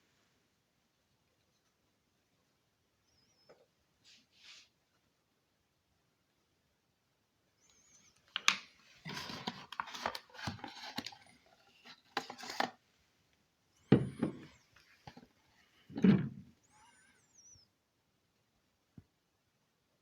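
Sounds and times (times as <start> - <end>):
packaging rustling: 8.3 - 12.8.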